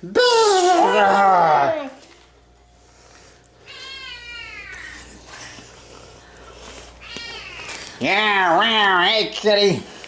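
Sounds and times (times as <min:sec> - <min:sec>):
cat meowing: 0:03.6 - 0:05.0, 0:07.0 - 0:07.8.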